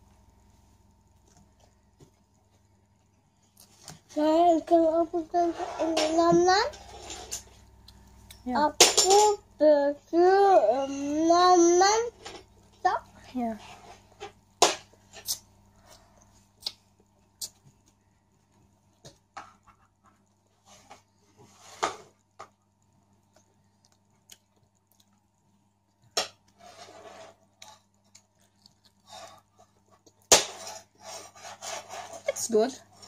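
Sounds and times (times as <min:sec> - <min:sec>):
soft chewing sounds: 0:00.2 - 0:04.2, 0:07.3 - 0:08.5, 0:15.2 - 0:21.5, 0:22.1 - 0:31.0.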